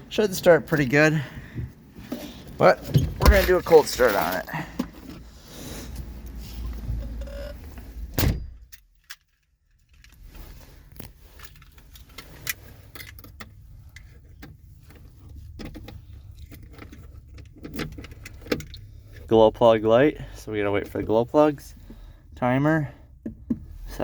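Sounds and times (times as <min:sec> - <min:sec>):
handling clicks and knocks: 0:01.7 - 0:05.3, 0:10.9 - 0:19.3
keys jangling: 0:03.3 - 0:04.8
loud thump: 0:08.1 - 0:08.6.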